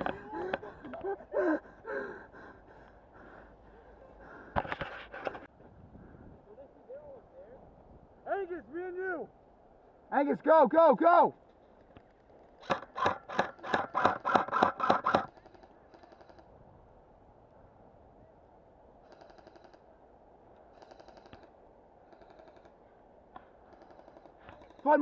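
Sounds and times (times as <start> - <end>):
airsoft gun shots: 12.6 - 15.3
distant airsoft fire bursts: 12.6 - 16.5, 19.0 - 19.8, 20.7 - 22.8, 23.6 - 25.0.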